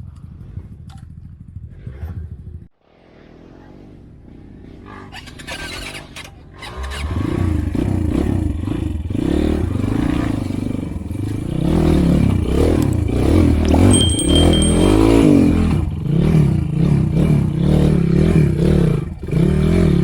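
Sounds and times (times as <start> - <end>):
motorcycle engine revving: 4.4 - 20.0
clattering knocks: 13.7 - 15.2.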